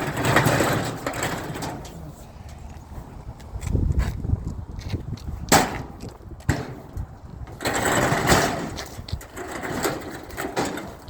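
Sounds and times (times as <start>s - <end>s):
metal clanks: 0.0s - 2.0s, 5.5s - 11.0s
metal rattling and scraping: 0.0s - 2.4s, 4.8s - 11.0s.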